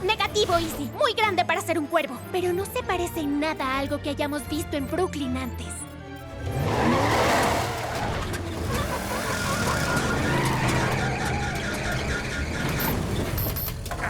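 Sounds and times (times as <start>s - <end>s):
car engine revving: 6.3s - 14.0s.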